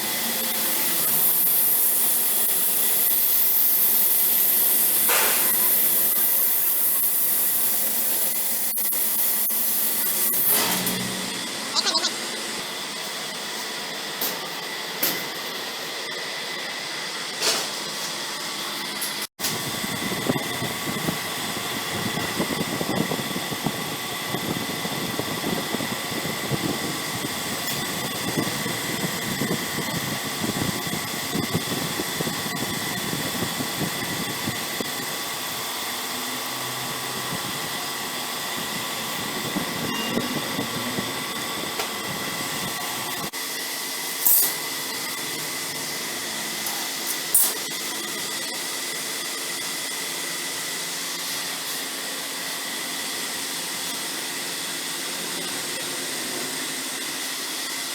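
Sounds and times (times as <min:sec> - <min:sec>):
laser cutting machine hissing: 0:00.0 - 0:12.4.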